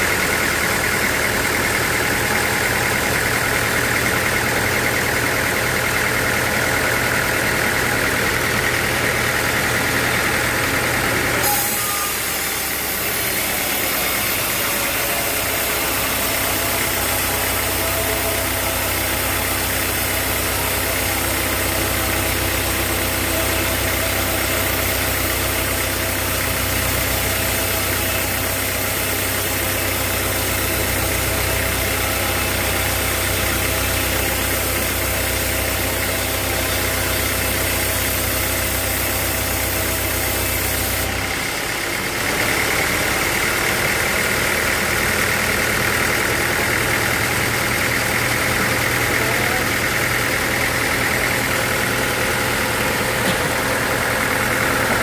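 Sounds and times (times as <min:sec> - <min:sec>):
high machine whine: 0:00.0 - 0:43.0
sawmill machinery hum: 0:00.0 - 0:55.0.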